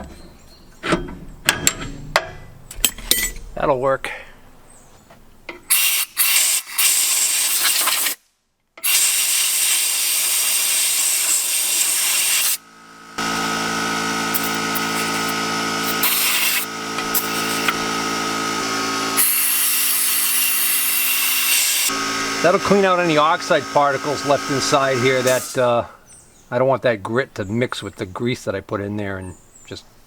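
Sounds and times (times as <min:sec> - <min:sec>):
power drill scraping metal bore: 0:08.8 - 0:25.7
whining motor hum: 0:09.9 - 0:25.7.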